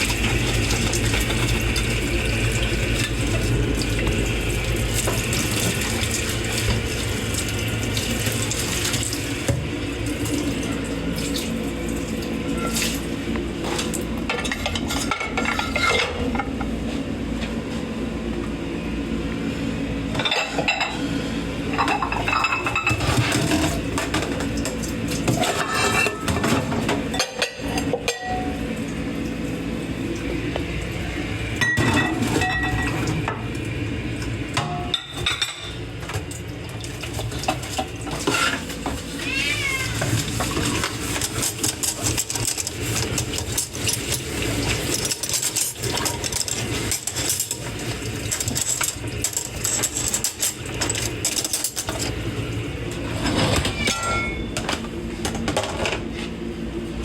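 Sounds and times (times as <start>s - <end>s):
running water in sink: 0.0s - 15.9s, 21.7s - 54.4s
plates and forks clinking: 25.4s - 28.6s, 31.6s - 33.0s, 53.6s - 54.8s
cat meowing: 39.2s - 40.1s.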